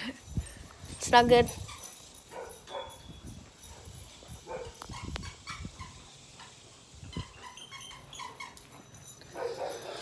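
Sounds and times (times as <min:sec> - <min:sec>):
dogs making quiet sounds: 0:09.3 - 0:10.0.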